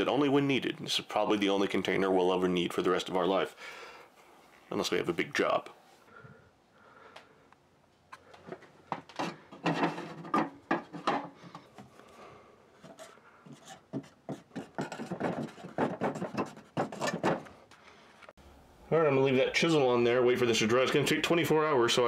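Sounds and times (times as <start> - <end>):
hard objects scraping and knocking: 8.1 - 12.2, 12.8 - 18.3.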